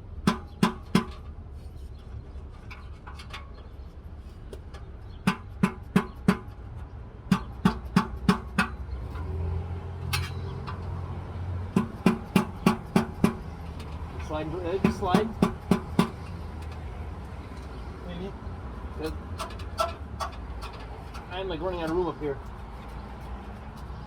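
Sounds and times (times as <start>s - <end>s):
screwdriver knocking on metal: 7.3s - 8.8s, 11.7s - 13.9s, 14.8s - 16.8s.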